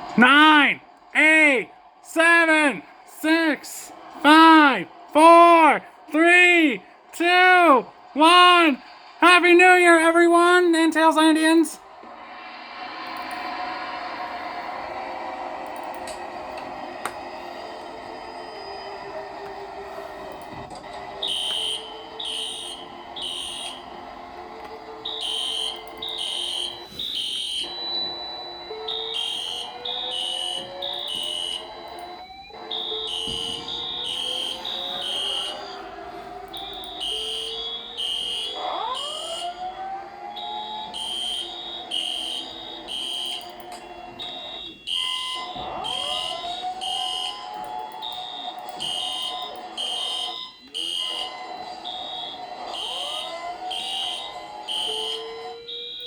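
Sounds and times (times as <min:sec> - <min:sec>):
fire alarm beeping: 0:00.0 - 0:11.8, 0:19.8 - 0:56.0.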